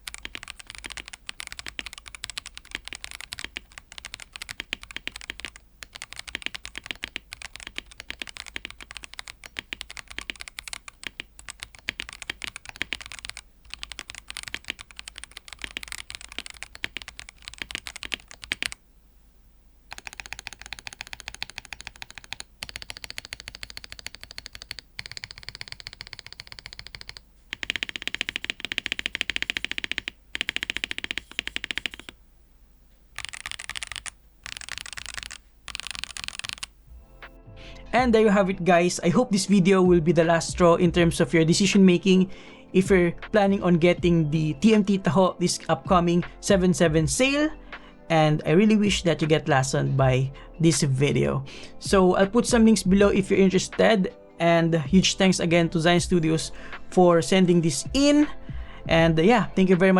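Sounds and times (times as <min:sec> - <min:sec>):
mechanical keyboard key clacks: 0:00.0 - 0:18.8, 0:19.9 - 0:32.1.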